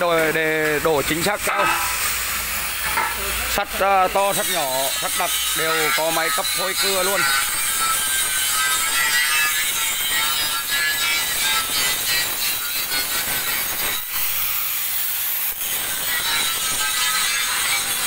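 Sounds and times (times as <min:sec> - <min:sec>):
metal-cutting saw rasping: 0:00.8 - 0:18.0.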